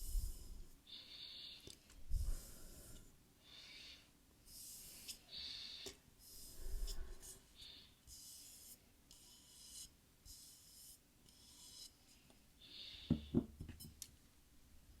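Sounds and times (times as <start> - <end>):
asmr rubbing strokes: 6.3 - 7.5.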